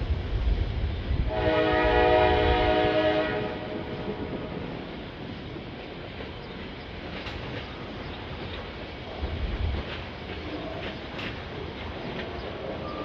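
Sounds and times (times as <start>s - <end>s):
locomotive air horn blast: 1.3s - 3.9s.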